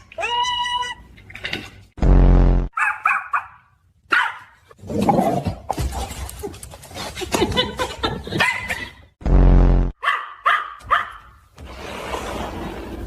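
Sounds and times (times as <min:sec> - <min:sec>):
dog barking: 0:02.8 - 0:04.6, 0:10.0 - 0:11.4.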